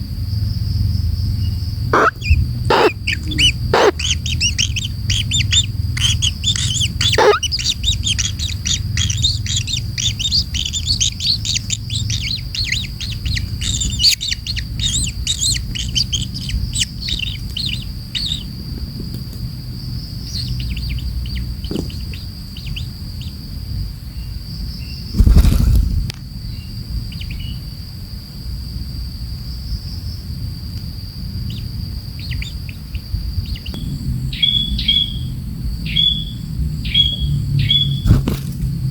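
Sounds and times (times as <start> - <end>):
low background rumble: 0.0 - 38.9
kingfisher chattering calls: 1.4 - 18.5.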